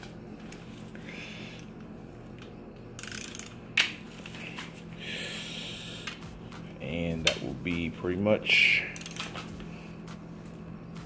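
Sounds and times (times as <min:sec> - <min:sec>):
torque wrench click: 0:03.0 - 0:03.9
torque wrench ratcheting: 0:03.0 - 0:03.9, 0:08.9 - 0:09.4.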